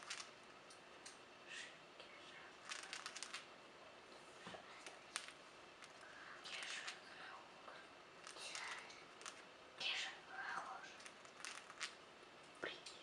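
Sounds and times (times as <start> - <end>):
bird grinding its beak: 2.6 - 3.4, 11.0 - 12.0.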